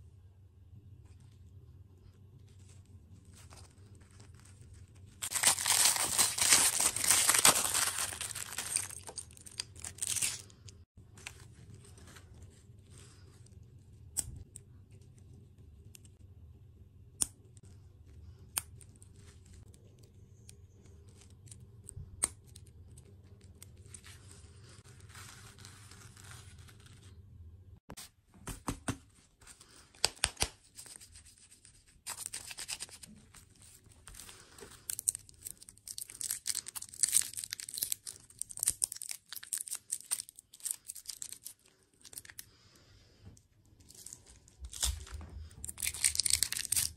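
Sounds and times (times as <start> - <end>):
packaging crinkling and tearing: 3.3 - 12.1, 32.1 - 42.4, 43.9 - 46.9.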